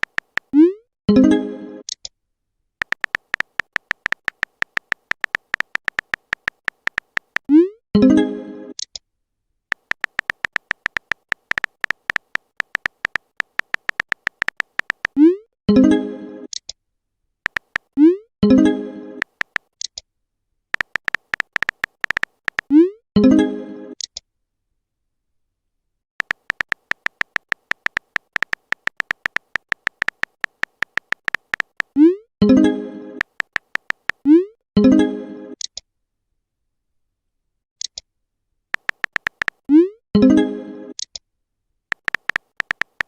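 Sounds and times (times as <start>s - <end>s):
phone keyboard clicks: 0.0s - 0.5s, 2.8s - 7.5s, 9.7s - 15.2s, 17.5s - 18.0s, 19.2s - 19.8s, 20.8s - 22.7s, 26.2s - 32.0s, 33.2s - 34.2s, 38.8s - 39.6s, 41.9s - 43.0s.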